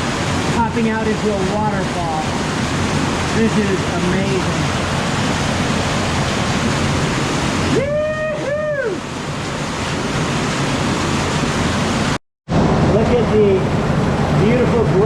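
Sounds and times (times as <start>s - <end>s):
waterfall rushing: 0.0s - 15.0s
person whooping: 7.7s - 9.1s.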